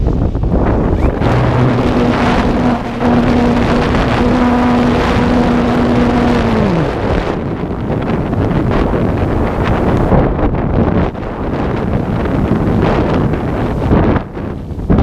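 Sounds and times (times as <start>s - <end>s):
wind buffeting microphone: 0.0s - 15.0s
motor hum: 0.4s - 10.2s.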